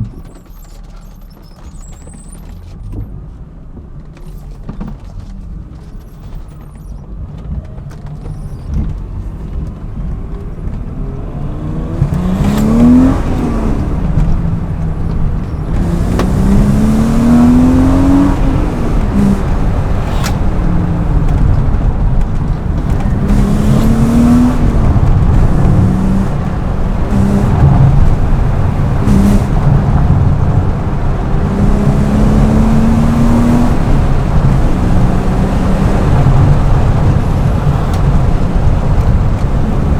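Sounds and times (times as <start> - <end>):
car engine accelerating hard: 6.0 - 39.9.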